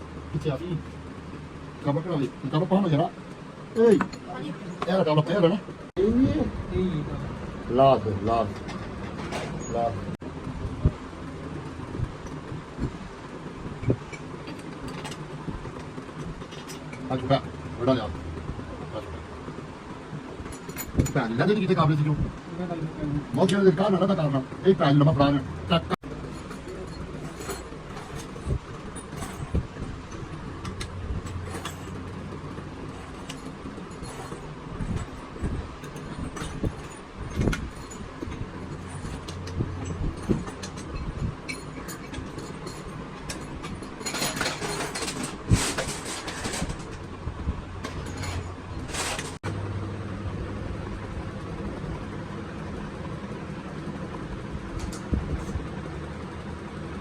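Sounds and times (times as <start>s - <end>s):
steady low hum: 0.0s - 57.0s
metal tools clattering: 8.5s - 10.0s, 26.0s - 47.1s, 47.8s - 49.4s
scraping bursts: 47.8s - 49.4s.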